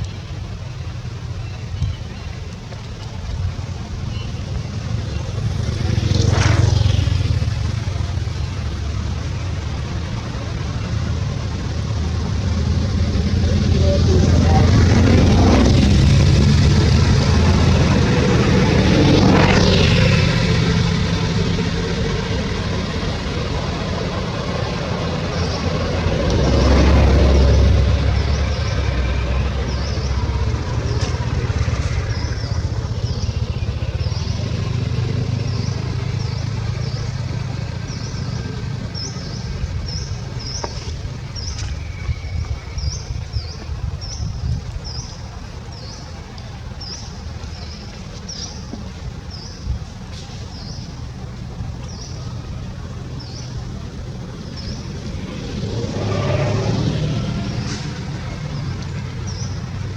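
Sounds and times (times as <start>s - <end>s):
traffic rumble: 0.0s - 59.9s.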